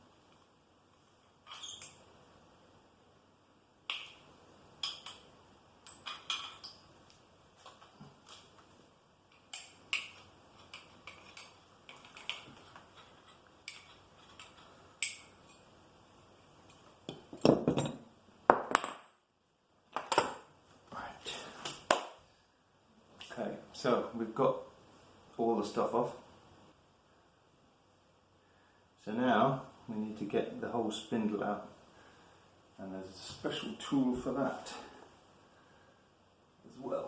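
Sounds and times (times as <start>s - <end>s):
metal tools clinking: 5.8s - 6.9s.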